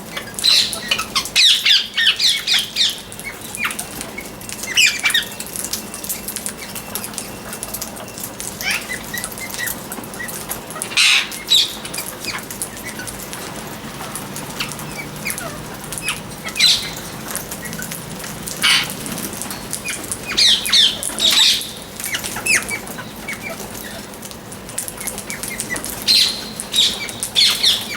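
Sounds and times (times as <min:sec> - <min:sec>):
parrot squawking: 0:00.1 - 0:05.4, 0:08.6 - 0:13.5, 0:14.4 - 0:19.1, 0:19.8 - 0:24.2, 0:24.8 - 0:27.9
parrot chirping: 0:00.1 - 0:07.3, 0:08.0 - 0:13.5, 0:14.4 - 0:24.2, 0:24.8 - 0:27.9.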